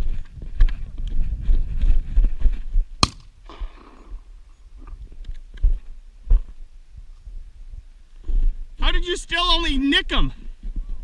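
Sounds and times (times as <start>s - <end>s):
shotgun shot with echo: 3.0s - 4.1s.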